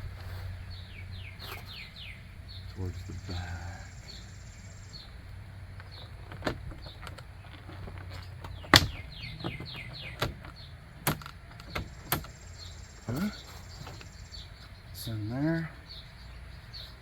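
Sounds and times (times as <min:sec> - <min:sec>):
birds chirping: 0:00.0 - 0:17.0
door trim snapping into place: 0:08.5 - 0:12.4.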